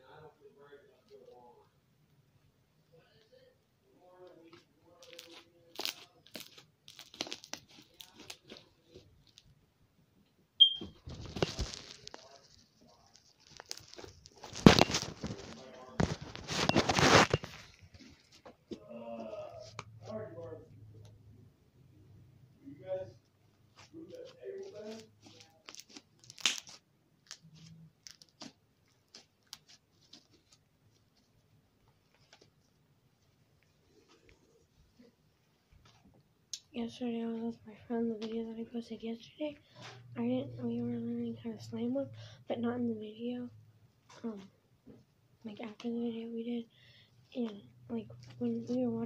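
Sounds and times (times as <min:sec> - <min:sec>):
slime squishing: 0:04.6 - 0:09.6, 0:11.3 - 0:20.1, 0:23.8 - 0:31.4
slime clicks and crackles: 0:05.0 - 0:08.6, 0:24.9 - 0:28.5.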